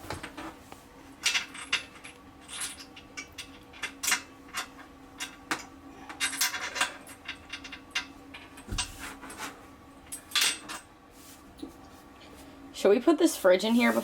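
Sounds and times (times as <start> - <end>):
faint steady hum: 0.0 - 14.0
metal tools clinking and clattering: 1.2 - 5.4, 6.1 - 9.4.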